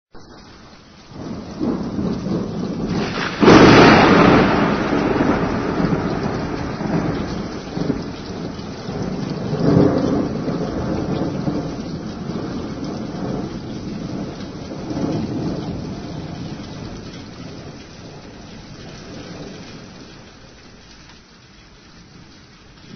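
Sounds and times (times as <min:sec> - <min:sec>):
steady rain: 0:00.1 - 0:22.9
thunder rumbling: 0:00.2 - 0:20.5
sharp thunder crack: 0:01.2 - 0:17.0.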